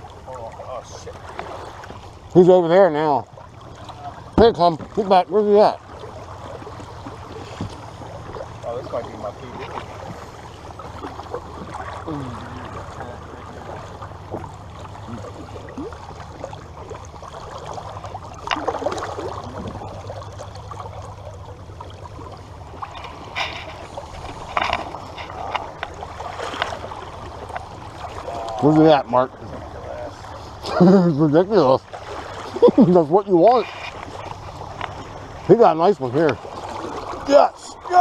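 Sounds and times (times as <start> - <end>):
river water running: 0.0 - 38.0
splashes: 0.0 - 38.0
knocks on boat: 4.3 - 5.1.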